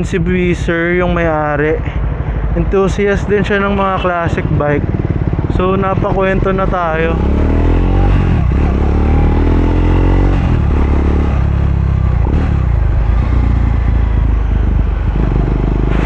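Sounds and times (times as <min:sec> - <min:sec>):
motorcycle engine revving under load: 0:04.4 - 0:16.0.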